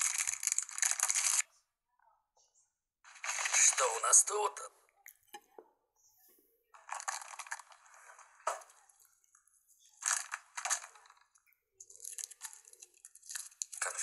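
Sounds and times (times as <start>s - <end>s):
packaging crinkling: 0.0s - 1.4s, 3.1s - 4.1s, 6.8s - 8.8s, 10.0s - 14.0s.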